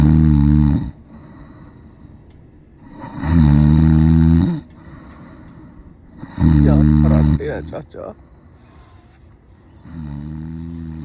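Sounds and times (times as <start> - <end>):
man snoring loudly: 0.0 - 1.3, 2.8 - 4.7, 6.2 - 7.8, 9.8 - 11.0
quiet breathing: 0.8 - 11.0.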